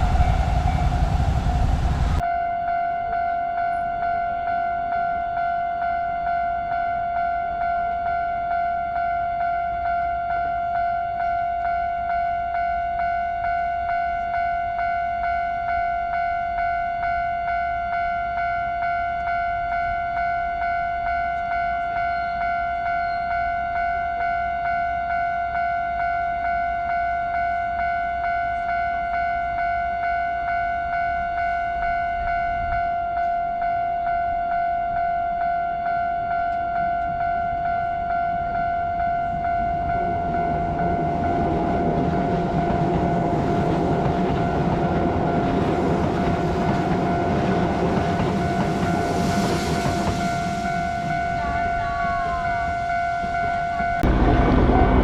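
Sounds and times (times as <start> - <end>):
train rumble: 0.0 - 2.3, 27.0 - 55.0
level crossing warning bell: 0.0 - 55.0.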